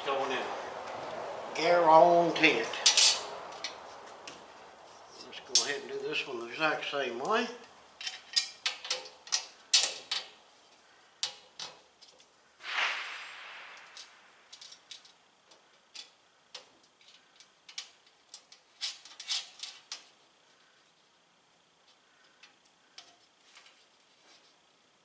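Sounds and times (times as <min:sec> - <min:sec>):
metallic clicks of bolts and nuts: 0:08.0 - 0:10.3.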